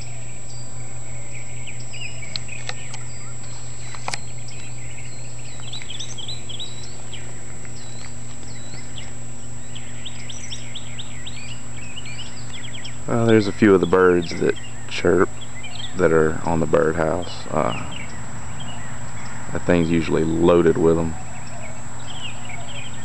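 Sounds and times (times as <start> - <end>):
birds chirping: 0.0 - 23.0
steady low hum: 0.0 - 23.0.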